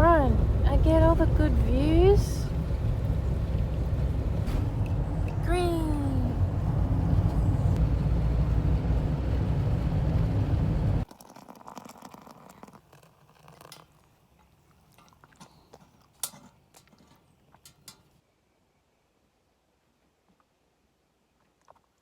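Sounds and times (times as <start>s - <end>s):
road and engine rumble: 0.0s - 11.1s.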